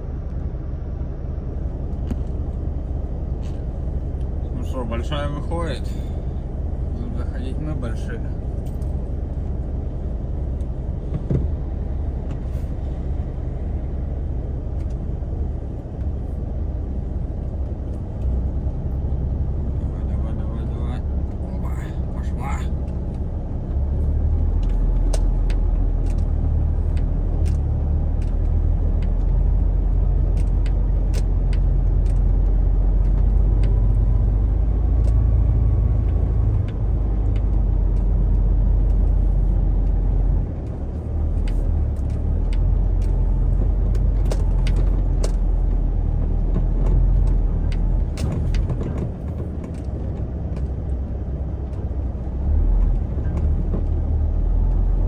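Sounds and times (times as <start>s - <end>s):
diesel truck engine rumbling: 0.0s - 55.0s
sharp clicks and knocks: 41.4s - 50.8s.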